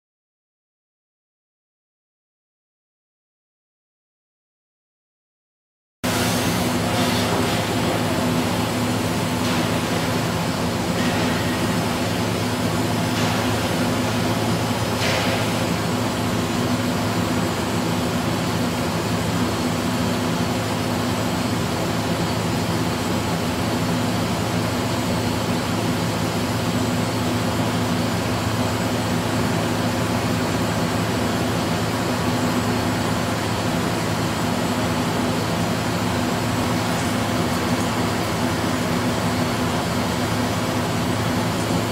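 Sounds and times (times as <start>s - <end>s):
machine drone with low hum: 6.0s - 41.9s.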